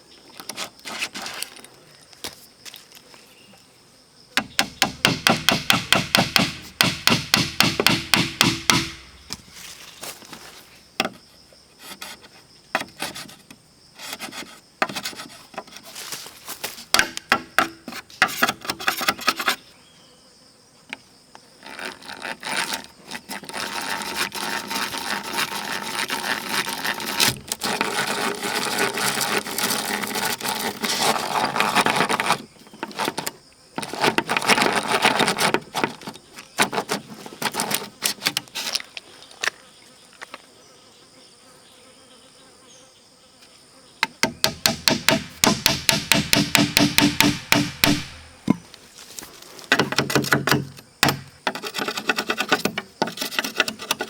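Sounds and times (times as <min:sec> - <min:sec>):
insects droning: 0:00.0 - 0:54.0
rough scraping or sawing of wood: 0:00.4 - 0:01.7, 0:04.4 - 0:11.2, 0:11.8 - 0:19.8, 0:21.6 - 0:39.0, 0:44.1 - 0:54.0
rapid even knocks: 0:04.4 - 0:09.4, 0:44.0 - 0:48.7, 0:49.7 - 0:54.0.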